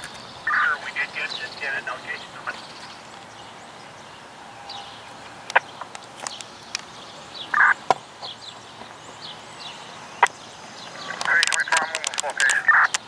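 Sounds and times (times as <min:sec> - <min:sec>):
small birds chirping: 0:00.0 - 0:13.0
steady background hiss: 0:00.0 - 0:13.0
sharp clicks: 0:11.2 - 0:13.0.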